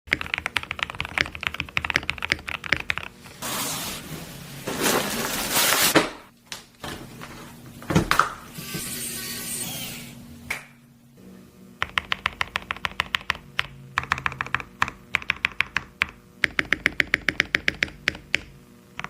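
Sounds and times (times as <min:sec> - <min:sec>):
mechanical keyboard typing: 0:00.1 - 0:03.1, 0:11.8 - 0:18.5.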